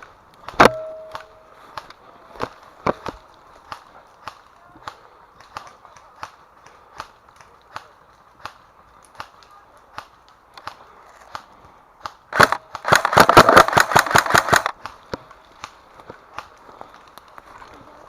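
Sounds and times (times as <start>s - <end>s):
airsoft gun rapid shots: 12.3s - 14.8s
light regular ticks: 14.5s - 17.8s.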